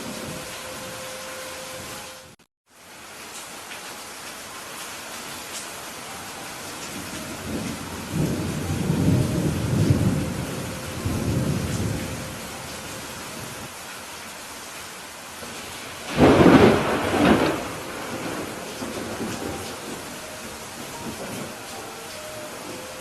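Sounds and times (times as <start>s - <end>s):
steady rain falling: 0.0s - 23.0s
low thunder rumble: 7.0s - 13.7s, 16.1s - 21.7s
sharp thunderclap: 16.1s - 20.0s.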